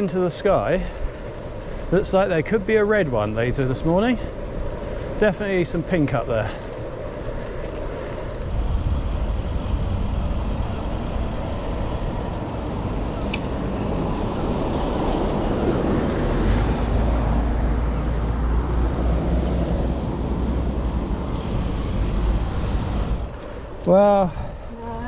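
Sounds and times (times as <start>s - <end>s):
wind rushing over microphone: 0.6s - 24.7s.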